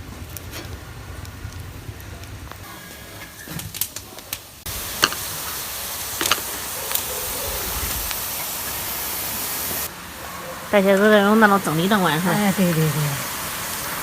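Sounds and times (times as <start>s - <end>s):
steam hissing from food steamer: 4.7s - 14.0s.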